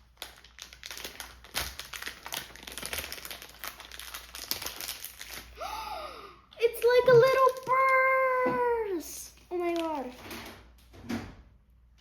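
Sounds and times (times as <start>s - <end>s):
packaging crinkling and rustling: 0.0s - 5.6s, 6.7s - 8.3s, 9.4s - 10.5s.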